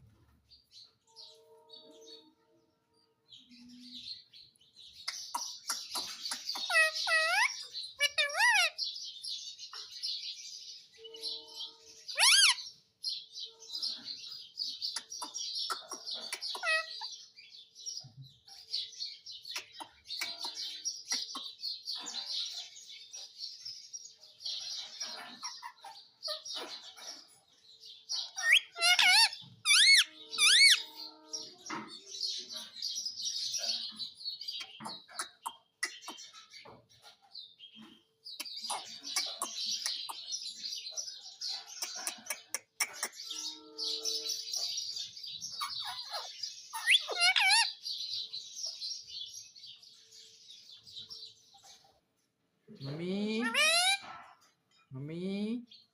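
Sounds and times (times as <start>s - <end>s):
parrots chirping: 5.0s - 8.9s, 12.0s - 12.8s, 13.7s - 17.4s, 19.5s - 23.4s, 24.6s - 27.3s, 28.0s - 31.5s, 32.4s - 49.8s, 53.3s - 54.4s
parrot shrieking: 6.6s - 8.8s, 12.1s - 12.6s, 16.5s - 17.0s, 28.3s - 31.0s, 45.6s - 47.8s, 53.4s - 54.0s.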